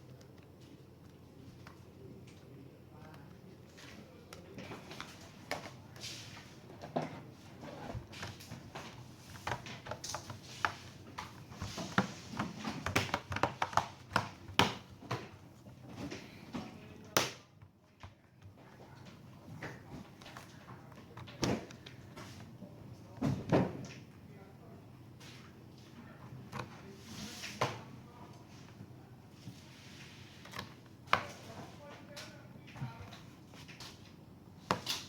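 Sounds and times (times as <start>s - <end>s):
laptop parts clicking and tapping: 8.1s - 15.4s.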